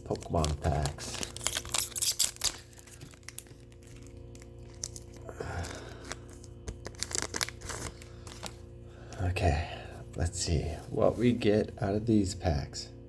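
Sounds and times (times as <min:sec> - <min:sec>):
foil wrappers crinkling: 0:00.0 - 0:08.7
low steady hum: 0:00.0 - 0:13.0.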